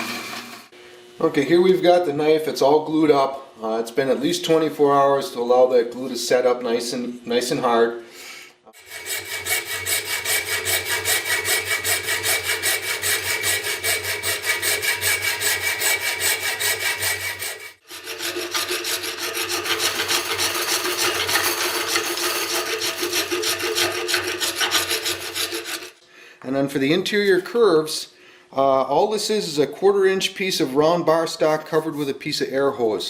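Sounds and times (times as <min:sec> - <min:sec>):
abrasive tool rubbing knife handle: 0:08.8 - 0:26.0.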